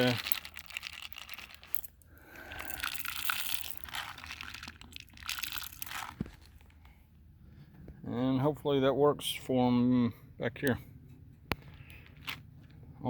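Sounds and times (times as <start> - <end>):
dry rustling and crunching: 0.0 - 7.0.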